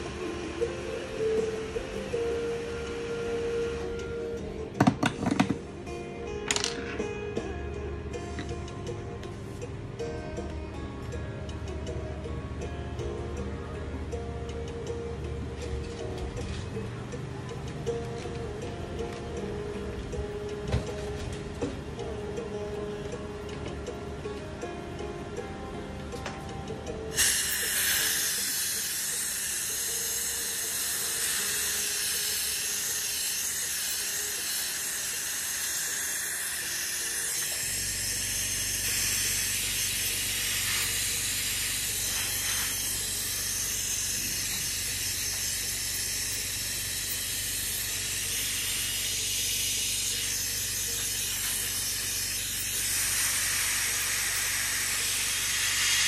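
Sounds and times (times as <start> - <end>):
air blowing hiss: 27.1 - 56.0.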